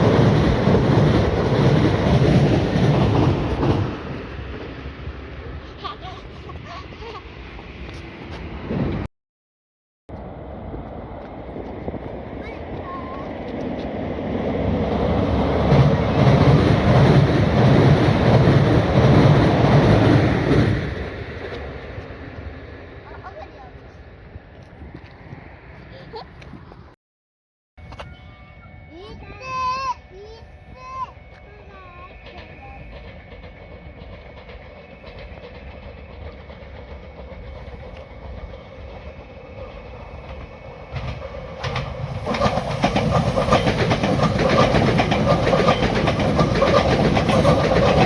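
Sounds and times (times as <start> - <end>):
train rumbling on rails: 0.0 - 9.1, 10.1 - 27.0, 27.8 - 48.0
wheels clacking over rail joints: 31.3 - 48.0.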